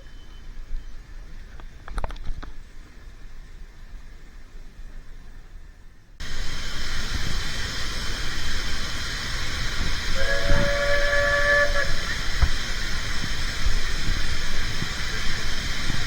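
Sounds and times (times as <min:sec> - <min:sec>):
moving train rushing noise: 0:03.0 - 0:16.0
steam locomotive whistle: 0:06.2 - 0:16.0.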